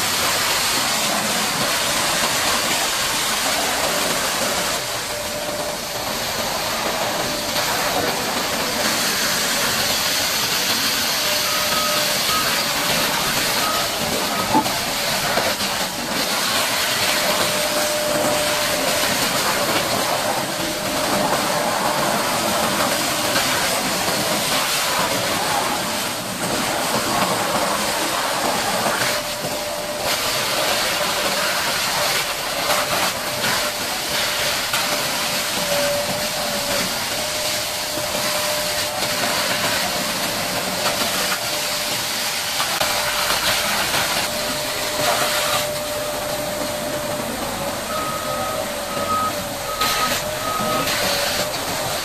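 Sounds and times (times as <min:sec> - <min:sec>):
pressure washer spraying water: 0:00.0 - 0:52.0.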